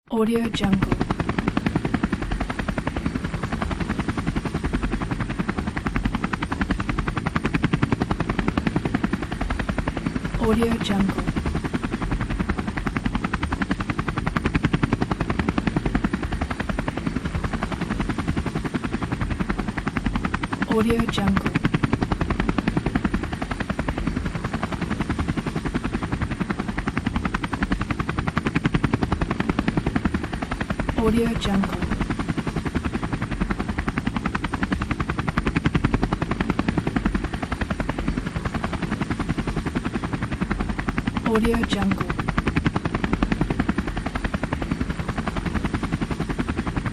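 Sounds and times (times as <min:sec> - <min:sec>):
engine and rotor rumble: 0:00.1 - 0:46.9
helicopter rotor blades chopping: 0:00.1 - 0:46.9.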